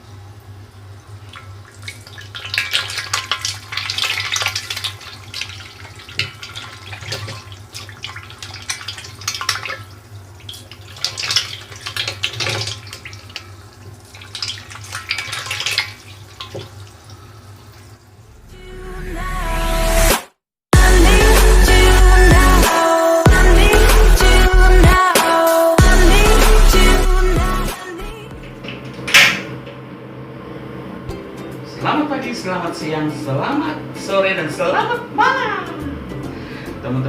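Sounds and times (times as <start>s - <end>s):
catfish splashing at water surface: 1.2s - 16.9s
steady low hum: 25.8s - 37.0s.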